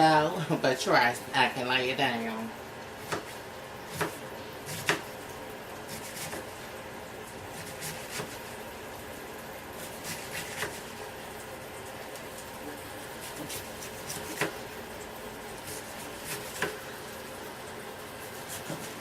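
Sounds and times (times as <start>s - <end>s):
steady kitchen hiss: 0.0s - 19.0s
knife cutting cabbage on board: 3.0s - 5.1s, 5.9s - 6.6s, 7.5s - 8.6s, 9.8s - 11.0s, 13.2s - 14.7s, 15.6s - 16.8s, 18.2s - 19.0s.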